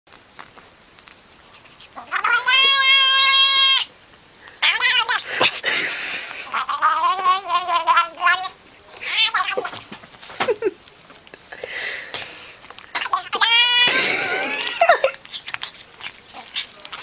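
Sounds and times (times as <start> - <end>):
animal wailing cries: 2.0 - 3.9, 13.0 - 14.1.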